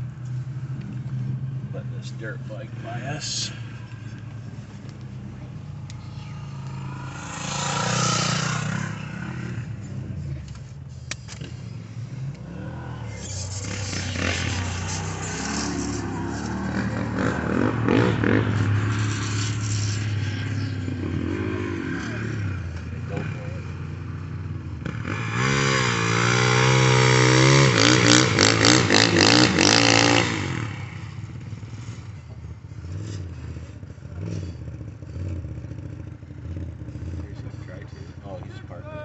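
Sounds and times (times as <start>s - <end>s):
dirt bike engine revving: 1.2s - 39.0s
loud rush of noise: 12.4s - 22.4s.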